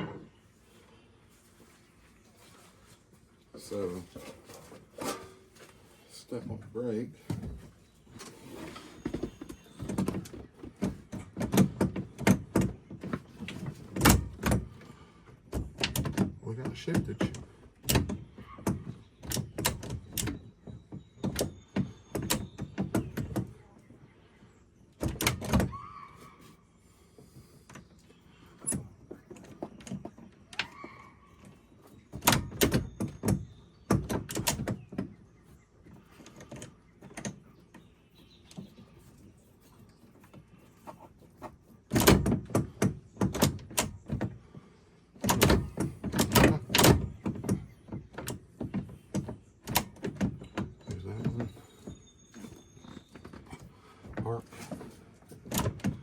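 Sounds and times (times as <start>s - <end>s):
gear shifter clunks and clicks: 7.2s - 23.9s, 24.9s - 25.9s, 27.2s - 39.2s, 39.8s - 56.0s.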